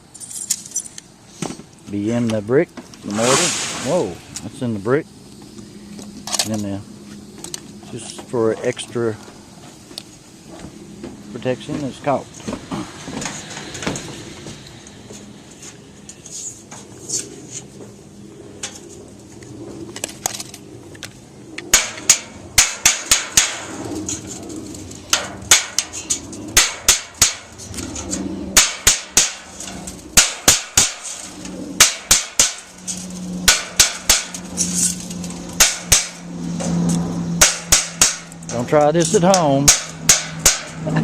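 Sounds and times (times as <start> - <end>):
low steady hum: 0.0 - 41.0
hammer blows on sheet metal: 21.7 - 23.8, 25.1 - 26.0, 26.6 - 27.5, 28.6 - 29.5, 30.2 - 31.2, 31.8 - 32.7, 33.4 - 34.4, 35.6 - 36.8, 37.4 - 38.6, 39.2 - 40.8.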